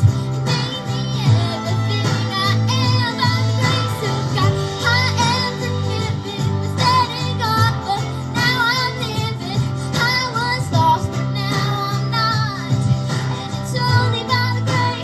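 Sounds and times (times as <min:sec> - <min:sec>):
instrumental accompaniment: 0:00.0 - 0:15.0
young female voices singing: 0:00.0 - 0:15.0.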